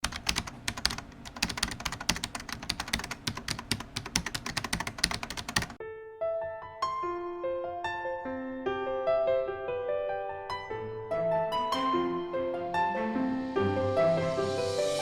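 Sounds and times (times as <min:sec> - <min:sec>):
typing on computer keyboard: 0:00.0 - 0:05.8
soft piano notes: 0:05.8 - 0:15.0.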